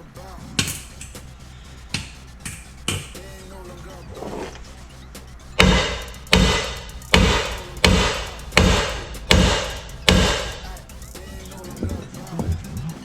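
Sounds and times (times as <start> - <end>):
hammer blows on steel: 5.6 - 10.9.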